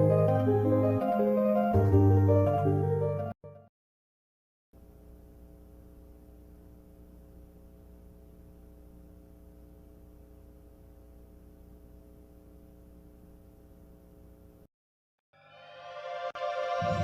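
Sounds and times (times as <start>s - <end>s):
low electrical hum: 4.8s - 14.7s.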